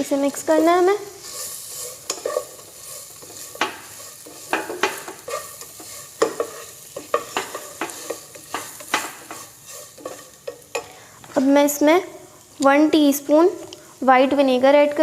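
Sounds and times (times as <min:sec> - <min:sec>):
oil sizzling: 0:00.0 - 0:15.0
spoon scraping frying pan: 0:00.4 - 0:11.5.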